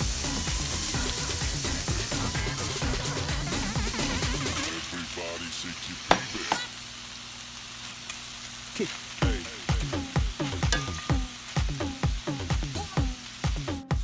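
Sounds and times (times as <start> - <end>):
electronic dance beat: 0.0 - 6.7, 9.2 - 14.0
food sizzling in a frying pan: 0.0 - 14.0
utensil knocking on pan: 9.2 - 12.2.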